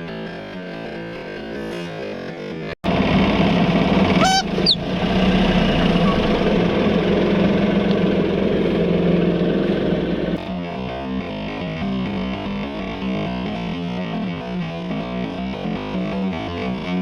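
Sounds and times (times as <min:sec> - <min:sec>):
music: 0:00.0 - 0:02.8, 0:10.3 - 0:17.0
car engine running: 0:02.8 - 0:10.6
rising squeal: 0:04.1 - 0:07.2.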